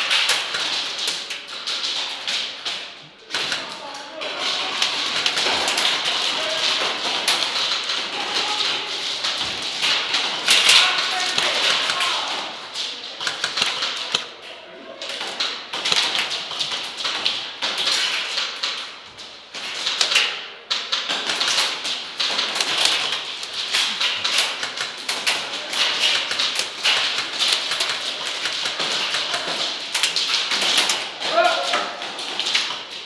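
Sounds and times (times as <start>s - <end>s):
airsoft gunfire: 4.3s - 12.6s, 15.2s - 18.9s, 19.6s - 32.9s.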